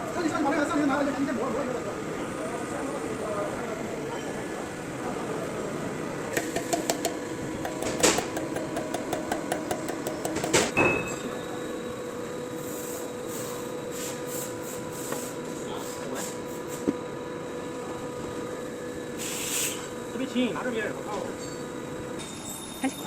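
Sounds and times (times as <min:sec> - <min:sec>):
steady motor hum: 0:00.0 - 0:22.2
metallic tool clicking and knocking: 0:06.4 - 0:10.8
loud metal knock: 0:06.4 - 0:11.1.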